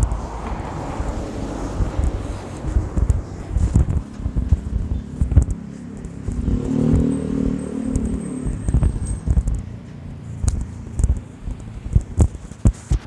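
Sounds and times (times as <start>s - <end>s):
low thumps from walking: 0.0s - 7.1s
motor vehicle passing: 0.0s - 13.0s.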